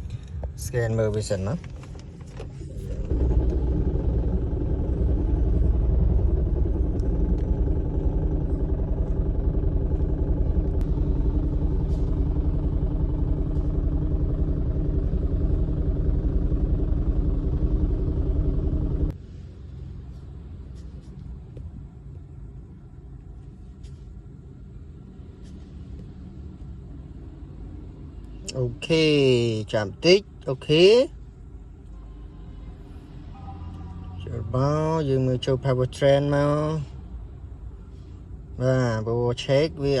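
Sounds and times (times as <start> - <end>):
car engine running: 0.0 - 21.6
faint steady hum: 0.0 - 40.0.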